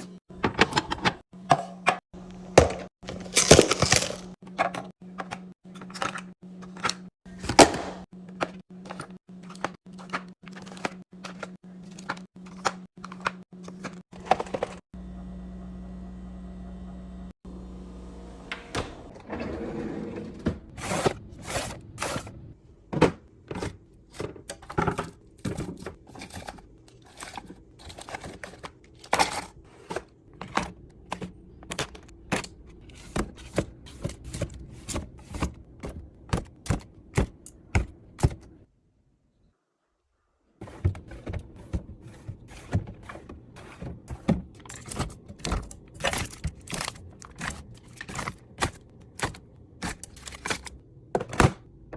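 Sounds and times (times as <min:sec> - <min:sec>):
containers clicking and thunking: 0:22.9 - 0:38.5, 0:40.6 - 0:51.9.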